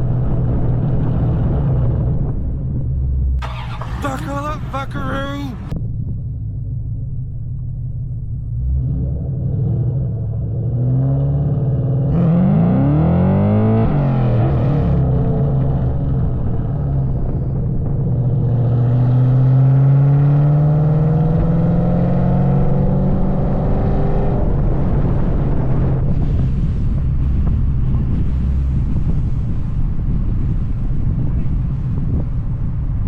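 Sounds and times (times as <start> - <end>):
car engine accelerating hard: 8.6 - 30.2.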